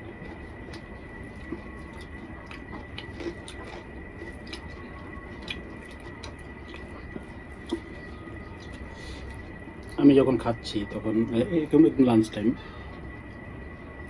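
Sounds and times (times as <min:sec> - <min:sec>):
low hum: 0:00.0 - 0:14.0
person chewing: 0:00.2 - 0:10.0.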